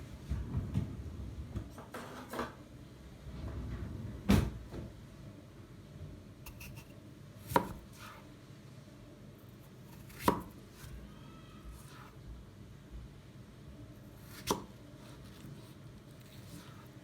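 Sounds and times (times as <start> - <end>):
knife chopping on wooden board: 6.5 - 8.2, 9.9 - 10.9, 14.2 - 15.4.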